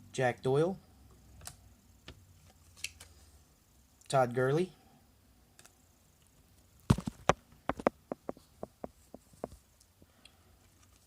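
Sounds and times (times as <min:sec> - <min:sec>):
cards clicking and tapping: 0:06.9 - 0:09.6.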